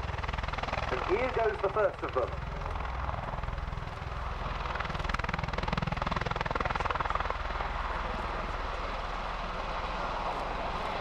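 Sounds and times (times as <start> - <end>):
tiltrotor aircraft rotor beat: 0.0 - 11.0.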